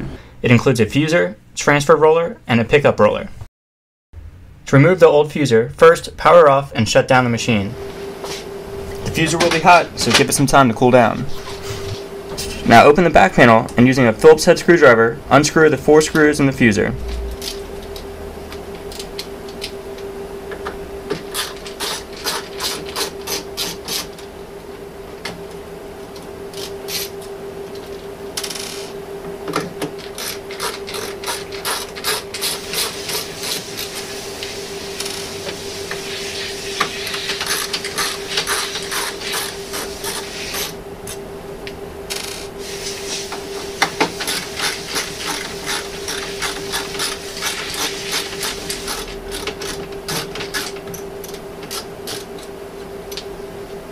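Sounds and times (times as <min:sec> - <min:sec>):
steady hum: 0:00.0 - 0:03.5, 0:04.2 - 0:53.9
screwdriver clicking and scraping: 0:30.0 - 0:34.0, 0:37.1 - 0:40.7, 0:44.0 - 0:52.5.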